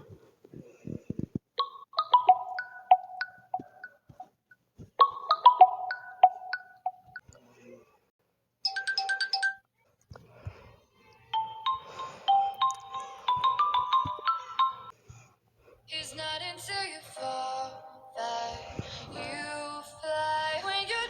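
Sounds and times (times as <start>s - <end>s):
phone ringtone melodies: 1.6s - 4.0s, 5.0s - 7.2s, 8.7s - 9.6s, 11.4s - 14.9s
bright chime: 11.4s - 14.9s.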